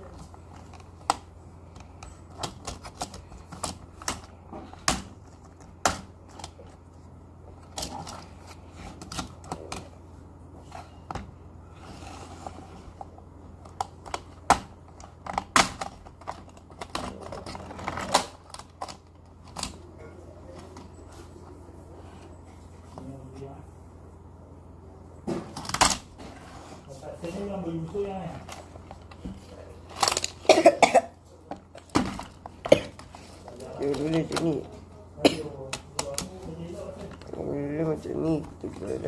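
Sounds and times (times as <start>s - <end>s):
plastic parts clicking and knocking: 0.0s - 6.9s, 7.5s - 10.0s, 12.5s - 19.9s, 25.3s - 26.1s, 28.4s - 30.5s, 31.5s - 34.7s, 35.6s - 37.4s.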